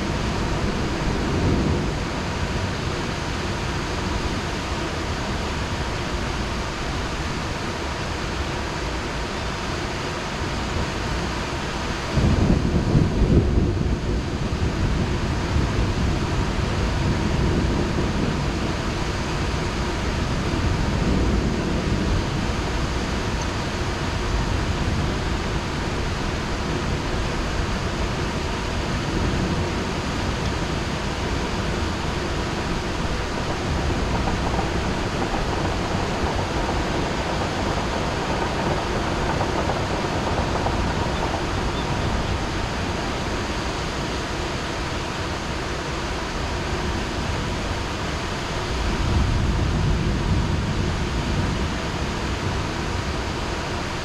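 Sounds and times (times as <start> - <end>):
heavy rain falling: 0.0 - 54.0
low rumble: 12.2 - 45.3.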